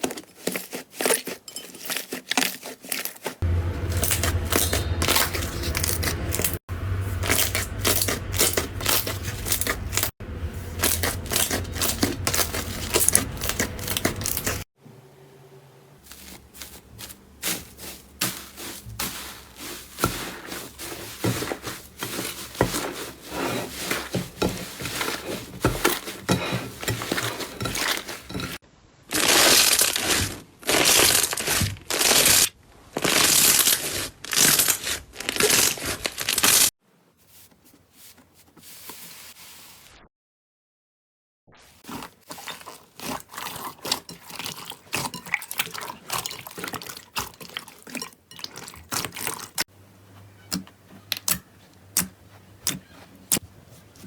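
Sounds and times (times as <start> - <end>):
crunchy slime crackling: 0.0 - 14.7, 16.0 - 28.4, 29.1 - 36.7.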